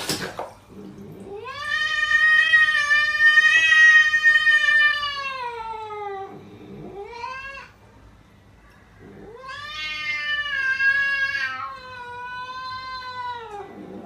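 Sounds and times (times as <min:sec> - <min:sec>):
cat meowing: 0:06.9 - 0:07.8, 0:09.2 - 0:13.8.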